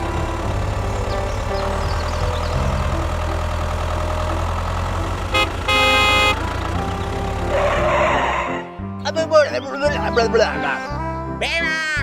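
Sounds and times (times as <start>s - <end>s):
engine running: 0.0s - 8.7s
horn toots: 5.3s - 6.6s.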